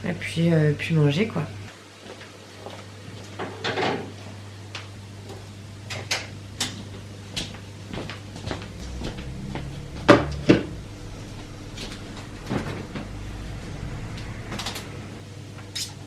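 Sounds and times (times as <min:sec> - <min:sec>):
low steady hum: 0:06.6 - 0:15.8.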